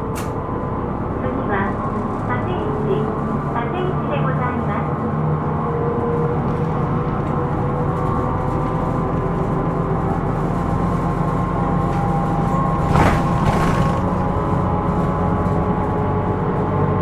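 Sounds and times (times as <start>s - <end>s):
bus engine and road rumble: 0.0s - 17.0s.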